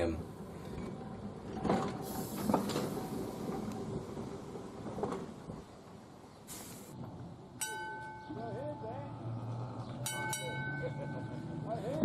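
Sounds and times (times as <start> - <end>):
short hiss: 6.5 - 7.0.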